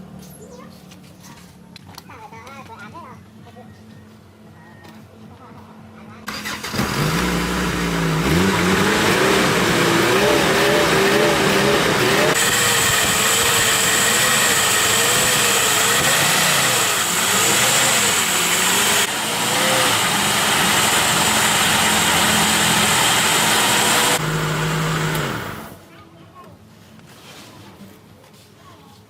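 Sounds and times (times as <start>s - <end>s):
pickup engine revving: 6.3s - 25.8s.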